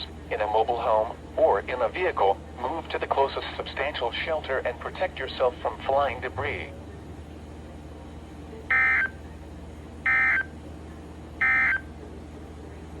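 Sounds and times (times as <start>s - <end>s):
screeching digital data tones: 8.7s - 9.2s, 10.1s - 10.5s, 11.4s - 11.8s.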